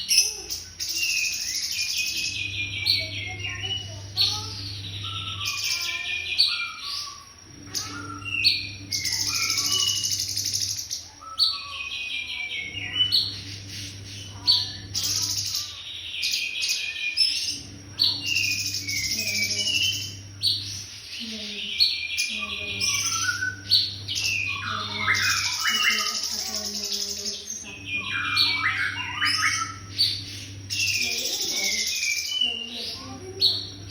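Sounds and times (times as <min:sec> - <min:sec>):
songbird trilling: 0:00.0 - 0:33.9
low hum: 0:02.1 - 0:05.8, 0:07.0 - 0:10.9, 0:12.6 - 0:15.8, 0:17.5 - 0:21.4, 0:27.6 - 0:31.8.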